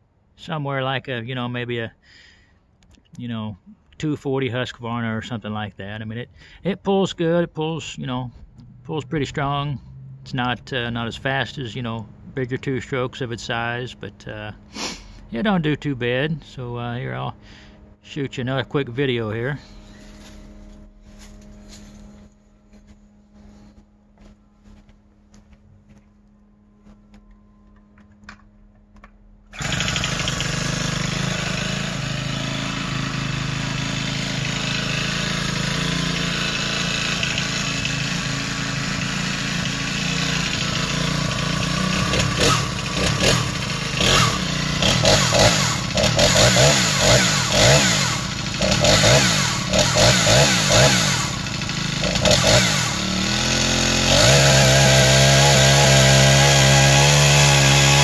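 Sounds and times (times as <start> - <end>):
chainsaw engine revving: 29.5 - 58.0.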